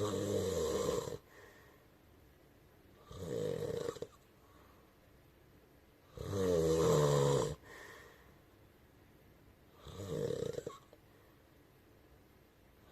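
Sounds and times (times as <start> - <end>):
person snoring: 0.0 - 1.3, 3.0 - 4.2, 6.1 - 7.8, 9.8 - 10.8.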